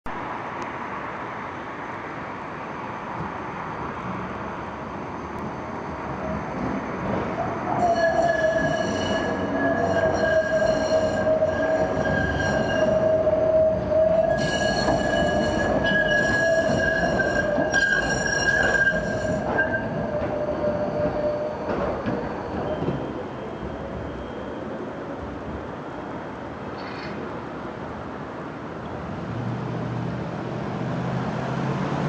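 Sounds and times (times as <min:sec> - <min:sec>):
tram wheels squealing on rails: 0:03.8 - 0:26.1, 0:26.7 - 0:27.4.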